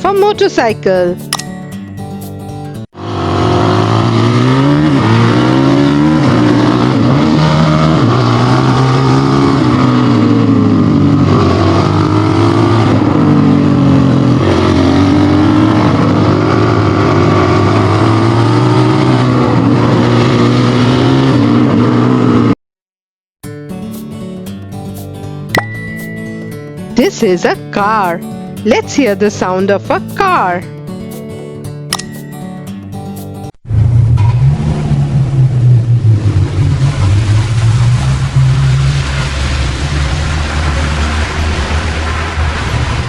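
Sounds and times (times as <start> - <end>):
motorcycle engine revving: 3.0 - 22.6, 33.7 - 43.0.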